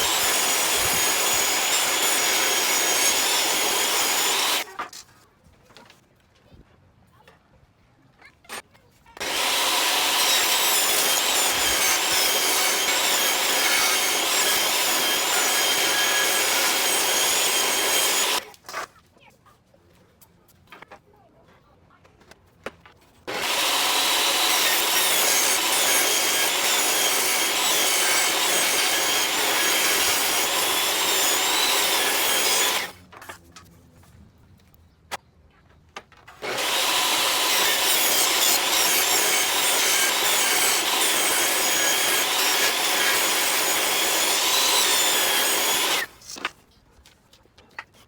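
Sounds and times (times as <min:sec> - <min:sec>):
power sander on wood: 0:00.0 - 0:04.7, 0:09.2 - 0:18.4, 0:23.3 - 0:33.0, 0:36.4 - 0:46.2.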